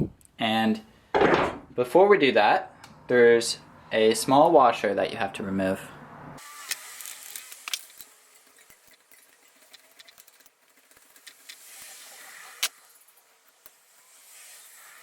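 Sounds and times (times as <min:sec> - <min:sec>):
metal parts scraping: 0:06.6 - 0:15.0
small metal parts clicking: 0:06.7 - 0:11.8.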